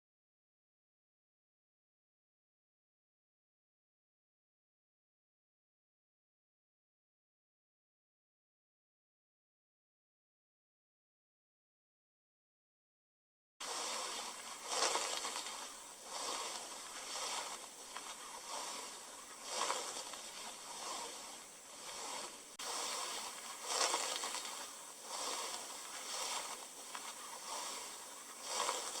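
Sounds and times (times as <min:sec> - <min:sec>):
soft rushing hiss: 0:13.6 - 0:29.0.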